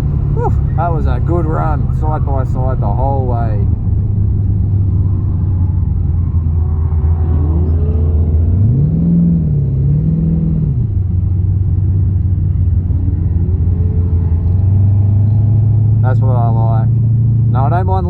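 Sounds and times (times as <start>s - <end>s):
car engine running and revving: 0.0s - 18.0s.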